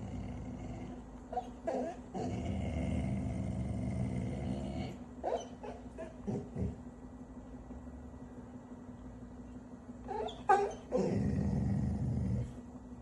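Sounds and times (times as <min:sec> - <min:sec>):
dog growling: 0:00.0 - 0:06.9, 0:10.2 - 0:12.6
dog yipping: 0:05.2 - 0:06.2, 0:10.1 - 0:11.0.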